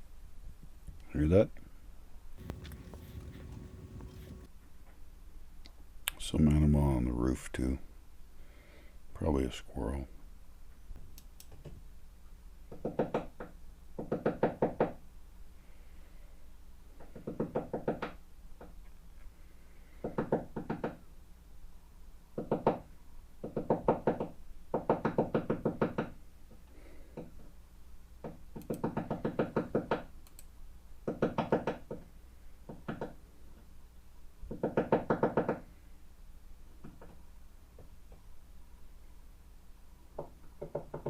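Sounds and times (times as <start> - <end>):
woodpecker pecking on wood: 2.4 - 4.5.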